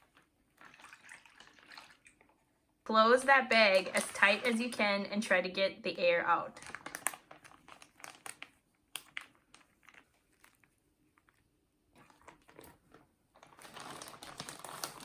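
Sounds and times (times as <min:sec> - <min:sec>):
plastic bag crinkling: 0:03.5 - 0:04.9, 0:06.5 - 0:15.0.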